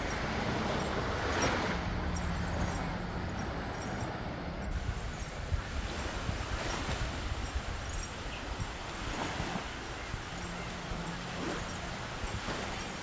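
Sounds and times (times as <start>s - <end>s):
wind: 0.0s - 13.0s
surf: 4.7s - 13.0s.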